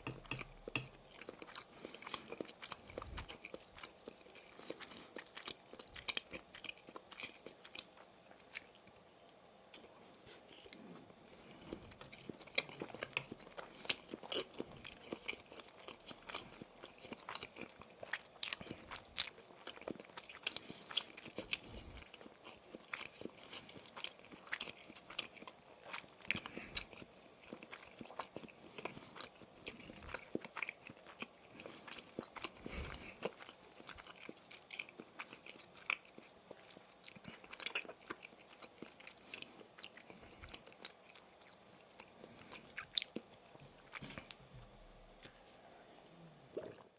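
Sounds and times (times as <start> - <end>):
chewing and biting sausage: 0.1 - 45.3.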